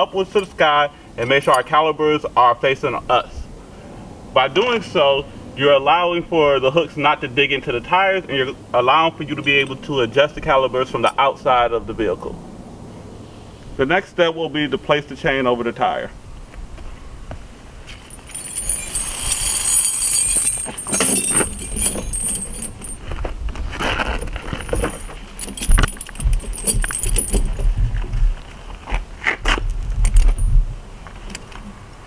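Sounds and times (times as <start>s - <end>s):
tire chains jangling and clinking: 1.2s - 1.8s, 17.9s - 28.1s, 30.0s - 30.6s.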